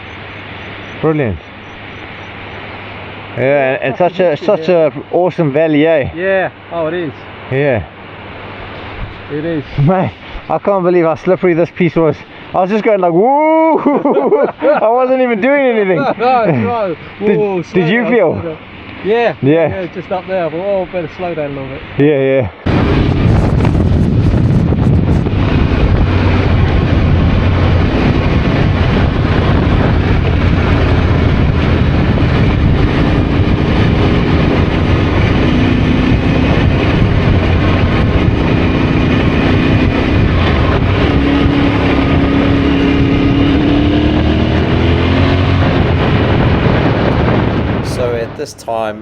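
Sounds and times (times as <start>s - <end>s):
wind and road noise: 0.0s - 49.0s
motorcycle engine: 22.7s - 47.8s.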